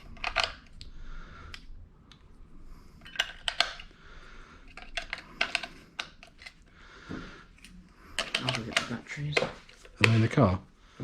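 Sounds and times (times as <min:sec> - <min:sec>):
clicks and taps of hard objects: 0:03.0 - 0:03.9, 0:04.7 - 0:07.3, 0:08.2 - 0:10.3.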